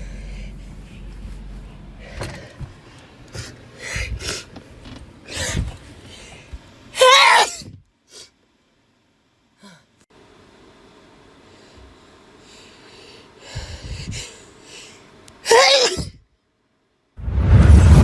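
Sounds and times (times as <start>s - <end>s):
woman sneezing: 7.0s - 7.8s, 15.5s - 16.2s.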